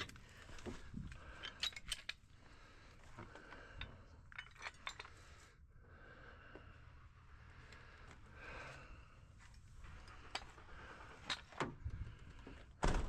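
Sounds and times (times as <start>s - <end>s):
metal tools clicking and clinking: 0.0s - 2.3s, 3.8s - 5.3s.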